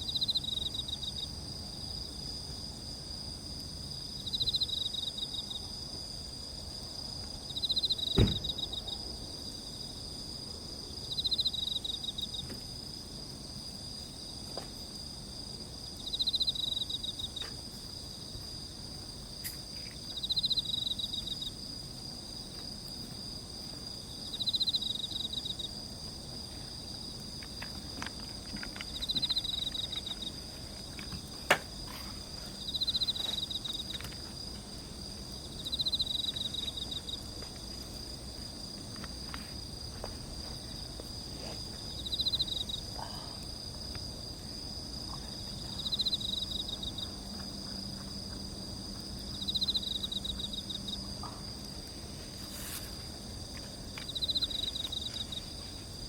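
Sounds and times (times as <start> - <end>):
insects trilling: 0.0 - 56.0
pulsed insect chirping: 24.0 - 26.0, 28.6 - 30.4, 31.8 - 37.2, 41.9 - 47.2.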